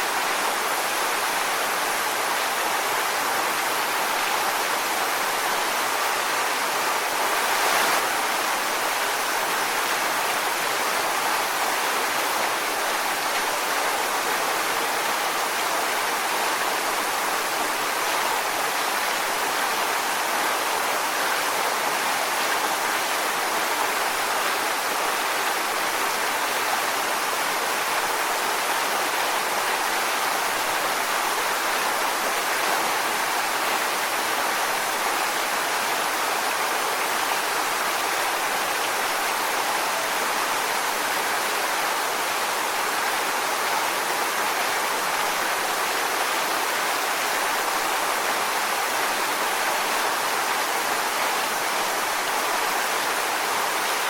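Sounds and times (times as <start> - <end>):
waterfall onto rocks: 0.0 - 54.0.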